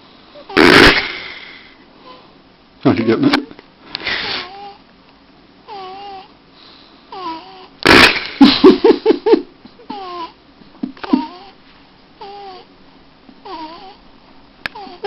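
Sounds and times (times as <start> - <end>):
baby snoring: 0.4 - 2.2, 4.1 - 4.8, 5.7 - 6.3, 7.1 - 8.0, 9.9 - 10.4, 11.1 - 11.6, 12.2 - 12.7, 13.4 - 14.0, 14.7 - 15.0.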